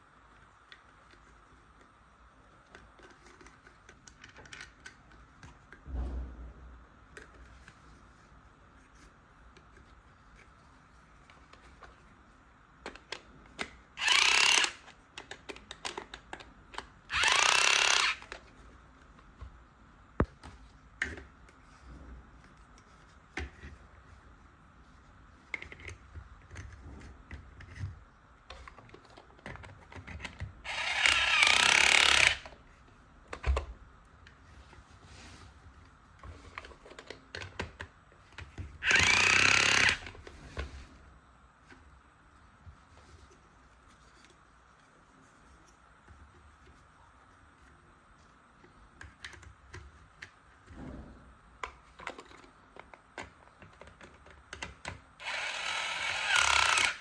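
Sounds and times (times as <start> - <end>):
electric drill motor whirring: 14.0 - 14.9, 17.1 - 18.3, 30.6 - 32.6, 38.8 - 40.2, 55.2 - 57.0.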